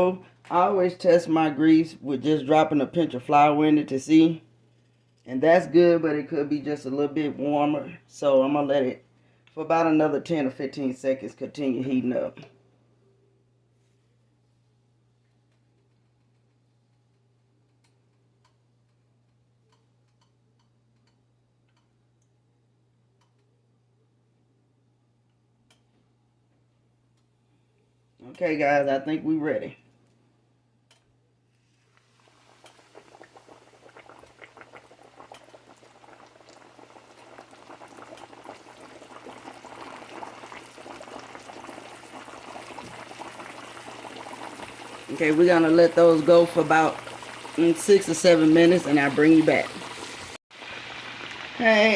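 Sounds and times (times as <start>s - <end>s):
cooking oil ticking and popping: 16.2s - 22.4s, 32.3s - 51.6s.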